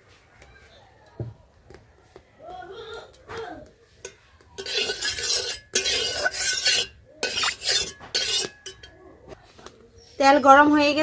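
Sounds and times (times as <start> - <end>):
stirring and scraping in a pan: 3.0 - 9.8.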